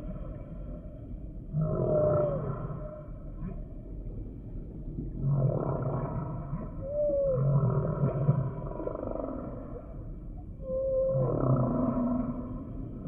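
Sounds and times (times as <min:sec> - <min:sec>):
humpback whale song: 0:00.0 - 0:13.0.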